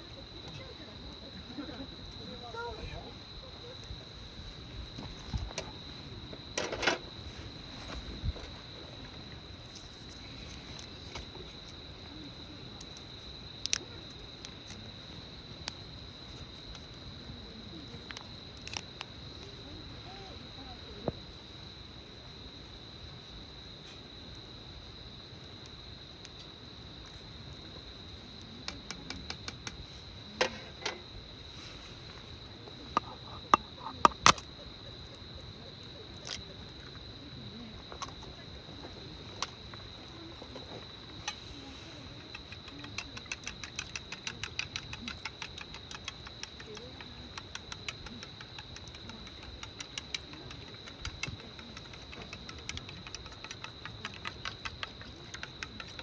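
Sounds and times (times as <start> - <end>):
cricket trilling: 0.0 - 56.0
sharp clicks and taps: 42.4 - 56.0.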